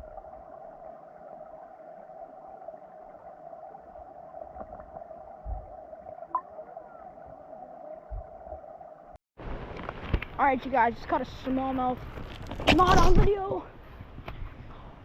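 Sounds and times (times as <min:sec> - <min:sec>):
muffled underwater water rushing: 0:00.0 - 0:10.2
constant mid-pitched hum: 0:00.0 - 0:15.0
dull low knocks: 0:05.4 - 0:05.8.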